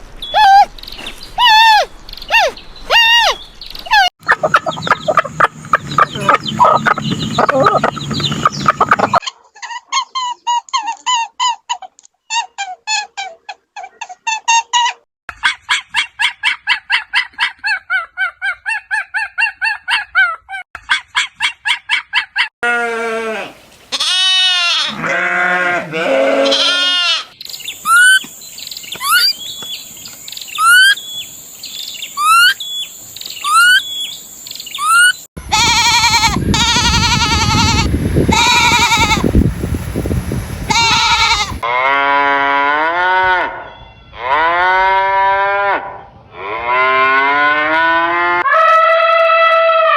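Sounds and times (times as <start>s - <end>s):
rising and falling animal calls: 0.3s - 22.5s, 24.1s - 28.3s, 28.9s - 29.4s, 30.5s - 31.3s, 32.0s - 39.3s
short pulsed animal calls: 32.2s - 35.2s.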